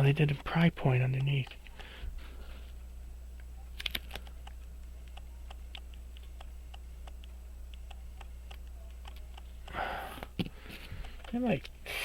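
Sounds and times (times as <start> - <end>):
pocket watch ticking: 0.0 - 1.8, 4.4 - 9.8
sharp clicks: 0.0 - 1.9, 3.4 - 10.3, 11.0 - 11.8
low electrical hum: 0.0 - 12.0.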